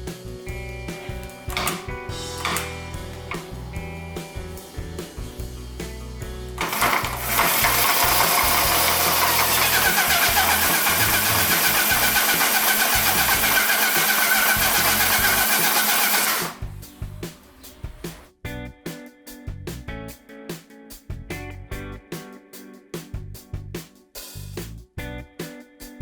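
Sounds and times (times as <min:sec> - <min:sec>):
background music: 0:00.0 - 0:26.0
loud machine whining: 0:01.2 - 0:04.7, 0:06.5 - 0:18.2.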